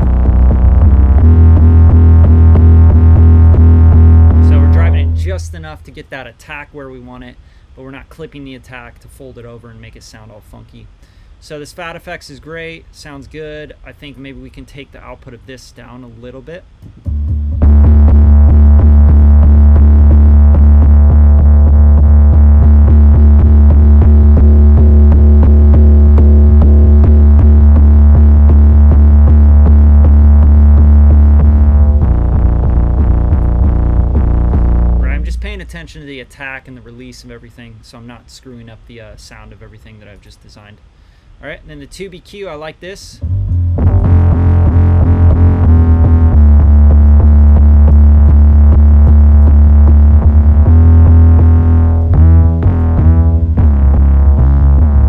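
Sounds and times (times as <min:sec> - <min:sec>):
electronic beat with clicking drums: 0:00.0 - 0:05.9, 0:16.8 - 0:35.8, 0:43.4 - 0:55.0
distorted bass note: 0:00.0 - 0:06.3, 0:16.8 - 0:36.2, 0:43.2 - 0:55.0.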